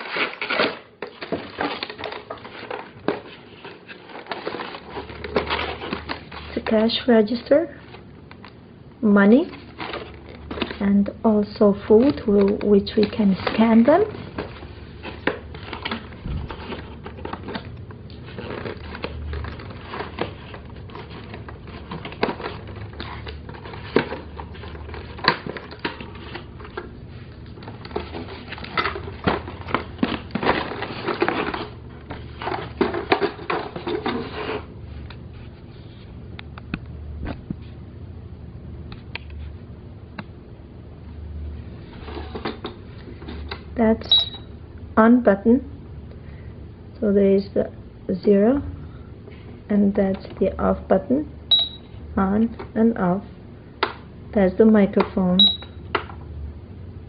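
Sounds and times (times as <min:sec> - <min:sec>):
plastic packaging crinkling: 0:00.0 - 0:07.0, 0:09.4 - 0:10.8, 0:11.5 - 0:35.1.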